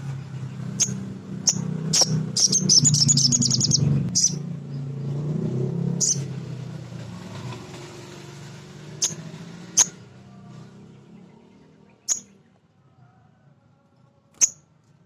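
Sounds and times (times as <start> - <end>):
low engine-like rumble: 0.0 - 5.2, 9.0 - 15.0
bird giving sharp calls: 0.7 - 4.4, 6.0 - 6.3.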